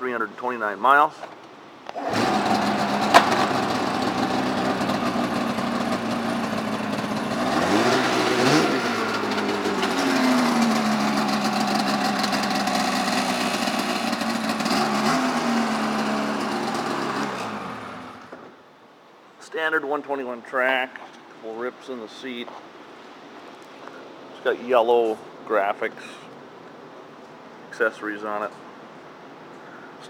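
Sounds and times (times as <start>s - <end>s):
snowmobile engine idling and revving: 2.0s - 18.3s.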